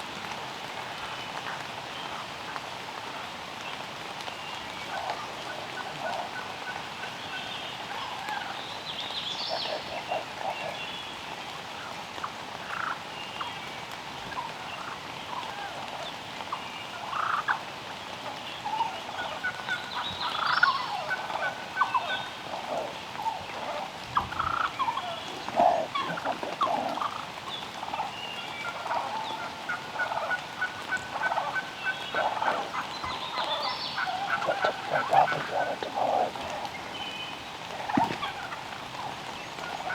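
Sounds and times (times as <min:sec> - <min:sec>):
wild turkeys gobbling: 0:04.9 - 0:08.6, 0:12.6 - 0:13.0, 0:14.3 - 0:15.8, 0:16.9 - 0:17.6, 0:18.6 - 0:36.9, 0:37.7 - 0:39.9.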